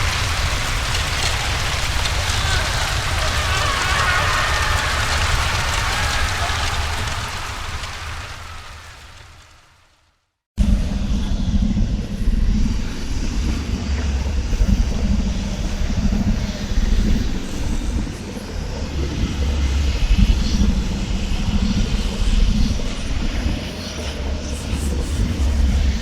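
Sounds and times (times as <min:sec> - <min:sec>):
dense rushing noise: 0:00.0 - 0:09.8.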